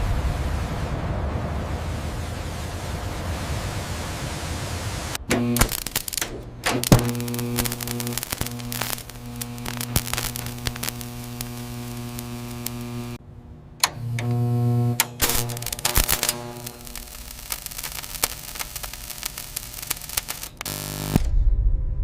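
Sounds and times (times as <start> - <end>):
crackling clicks: 5.2 - 13.2, 13.8 - 21.3
steady low hum: 5.2 - 21.3.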